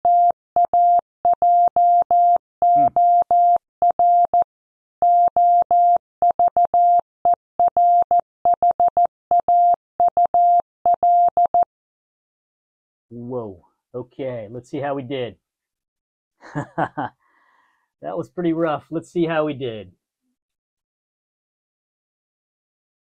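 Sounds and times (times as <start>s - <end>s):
morse code beeps: 0.1s - 4.4s, 7.6s - 11.7s.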